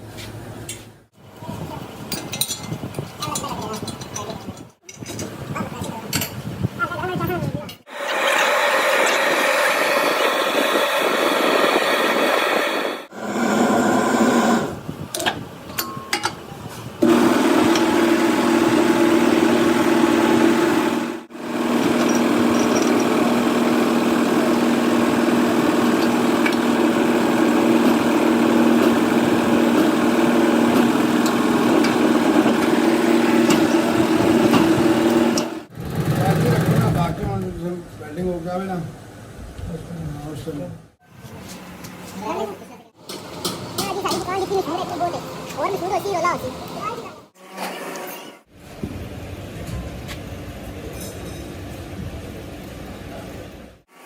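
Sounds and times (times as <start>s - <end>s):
welding machine hum: 17.0s - 36.2s.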